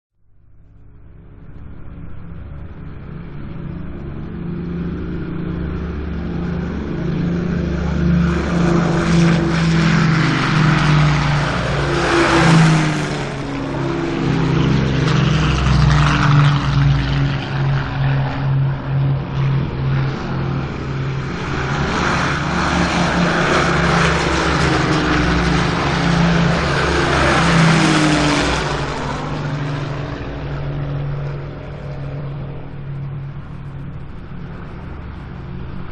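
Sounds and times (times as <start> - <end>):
piston engine planes taking off: 0.6 - 35.9.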